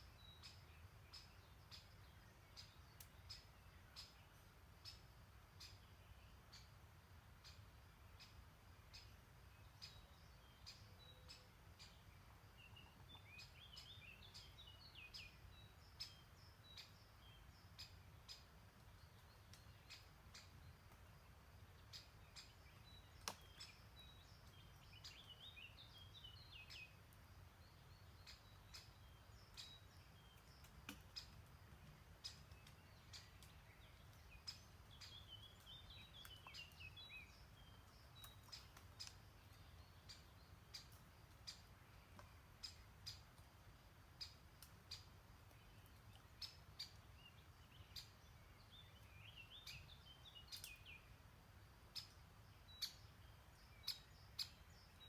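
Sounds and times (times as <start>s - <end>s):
songbird singing: 0.0s - 55.0s
sharp ticks and chirps: 0.1s - 55.0s.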